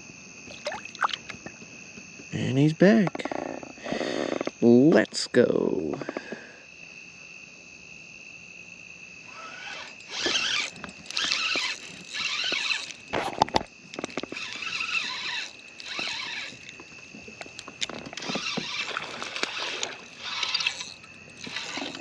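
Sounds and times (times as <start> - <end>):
crickets chirping: 0.0 - 22.0
zipper-like scraping bursts: 9.3 - 13.3, 14.4 - 16.6, 21.4 - 22.0.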